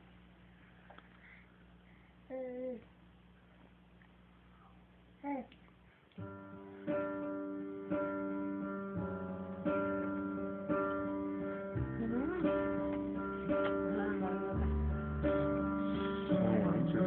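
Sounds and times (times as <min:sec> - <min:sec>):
acoustic guitar strumming chords: 0:06.5 - 0:17.0.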